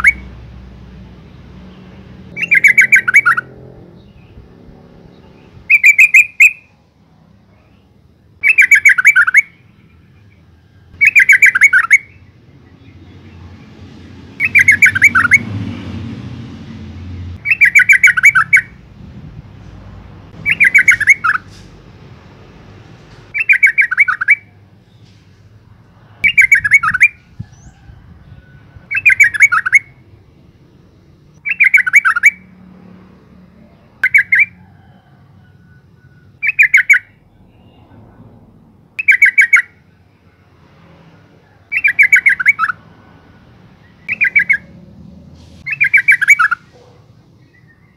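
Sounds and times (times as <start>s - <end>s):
bird chattering call: 2.4s - 3.6s, 5.7s - 6.7s, 8.4s - 9.6s, 11.0s - 12.2s, 14.4s - 15.4s, 17.4s - 18.8s, 20.4s - 21.6s, 23.3s - 24.5s, 28.9s - 29.9s, 31.4s - 32.4s, 34.0s - 34.6s, 39.0s - 39.7s, 41.7s - 42.8s, 44.0s - 44.8s, 45.6s - 47.0s.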